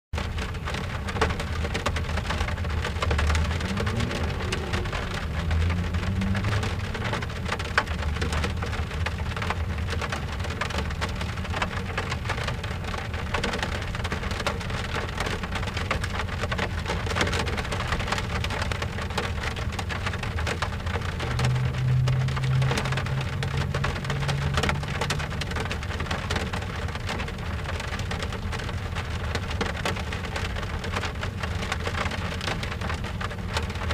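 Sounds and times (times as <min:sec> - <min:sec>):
rain pattering on window glass: 0:00.2 - 0:33.9
low rumble: 0:02.0 - 0:10.4, 0:19.6 - 0:27.8.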